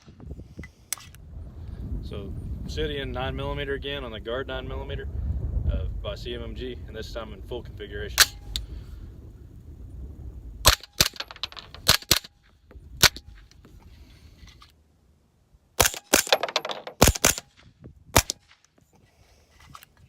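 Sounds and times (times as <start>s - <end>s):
suppressed gunshots: 15.8s - 17.6s.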